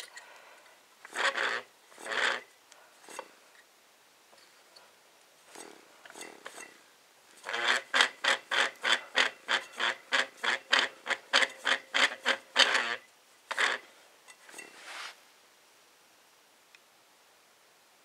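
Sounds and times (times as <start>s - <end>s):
siren rotor grinding scrape: 1.1s - 3.4s, 5.5s - 6.8s, 7.4s - 15.2s.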